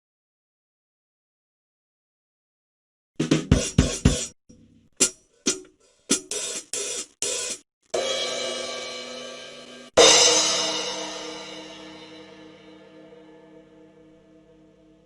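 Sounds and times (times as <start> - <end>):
drum fill: 3.2 - 4.4
snare and cymbal hits: 3.2 - 4.4, 5.0 - 12.6
cymbal crash ringing: 8.0 - 14.8.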